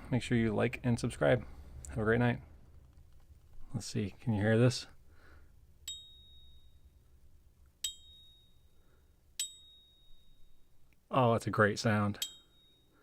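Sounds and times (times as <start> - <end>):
silver bar struck ringing: 5.9 - 7.0, 7.8 - 8.8, 9.4 - 10.8.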